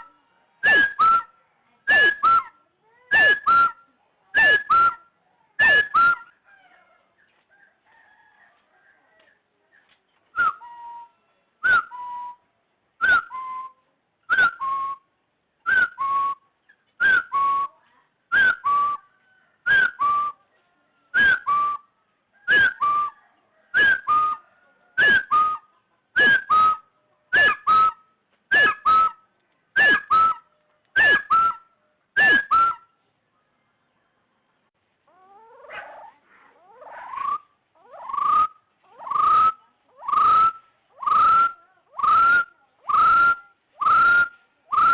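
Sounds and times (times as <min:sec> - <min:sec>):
jungle fowl hen calling: 0:00.0 - 0:03.8, 0:04.4 - 0:12.2, 0:21.0 - 0:29.2, 0:35.0 - 0:44.9.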